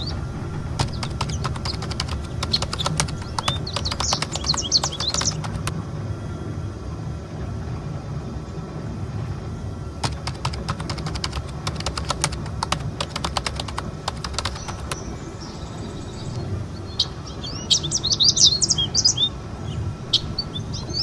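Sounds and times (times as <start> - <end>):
irregular sharp clicks: 0.8 - 5.7, 10.0 - 15.1.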